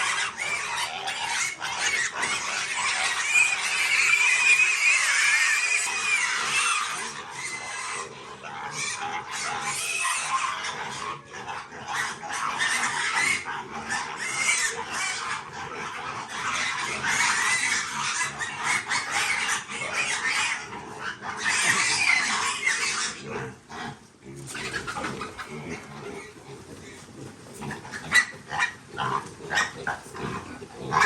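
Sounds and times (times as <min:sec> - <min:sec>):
piglets squealing: 0:00.0 - 0:26.9, 0:27.5 - 0:31.0.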